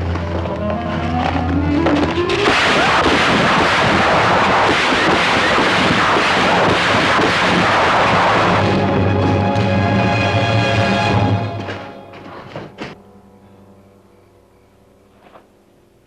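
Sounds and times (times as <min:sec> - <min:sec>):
rapid gunfire: 0:02.4 - 0:08.8.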